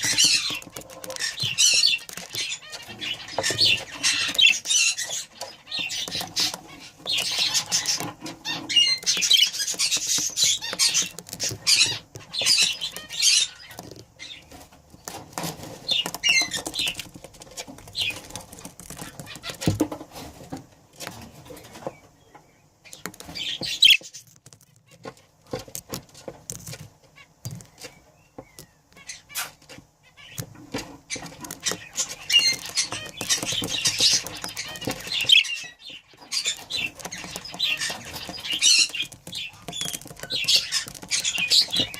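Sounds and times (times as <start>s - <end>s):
budgerigars chirping: 0.0s - 14.5s, 22.9s - 24.1s, 31.1s - 41.9s
clicks and rustles of movement: 0.0s - 22.1s, 22.9s - 41.9s.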